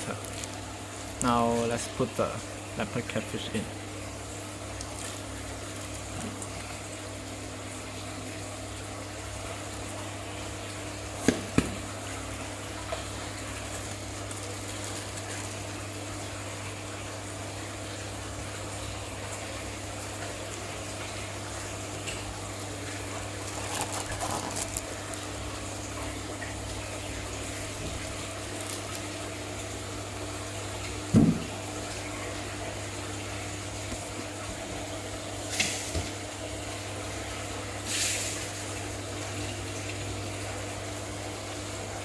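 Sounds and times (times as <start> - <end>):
aquarium pump hum and water flow: 0.0 - 42.0
water splashes: 2.8 - 34.7.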